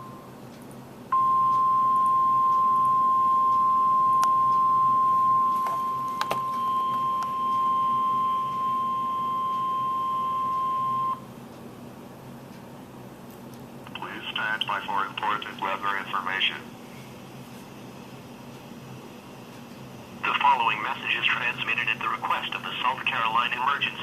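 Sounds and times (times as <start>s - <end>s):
steady high alarm beep: 0.0s - 0.3s, 1.1s - 11.3s
faint static clicks: 0.0s - 24.0s
radio hum and hiss: 13.8s - 24.0s.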